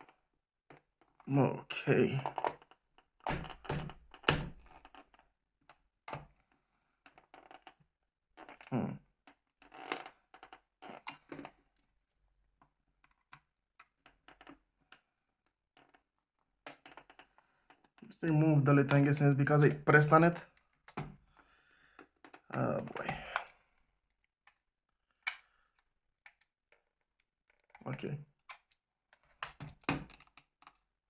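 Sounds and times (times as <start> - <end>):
hands tapping and scraping: 15.8 - 23.6.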